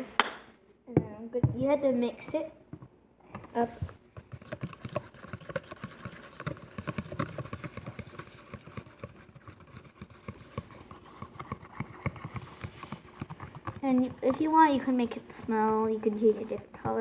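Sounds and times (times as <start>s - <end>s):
utensil tapping a mixing bowl: 1.0s - 1.8s, 2.7s - 17.0s.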